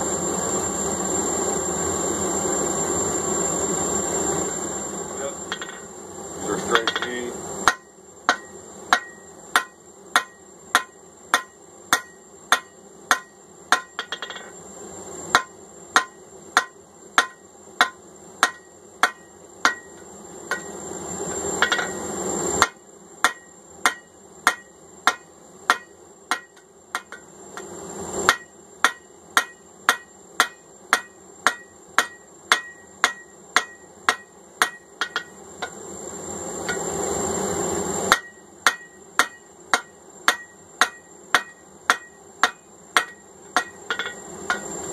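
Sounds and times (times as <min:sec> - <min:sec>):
hammer striking steel on anvil: 0:05.5 - 0:05.9, 0:06.6 - 0:14.6, 0:15.3 - 0:20.8, 0:21.6 - 0:22.0, 0:22.6 - 0:27.7, 0:28.3 - 0:35.8, 0:36.7 - 0:36.9, 0:38.1 - 0:44.8.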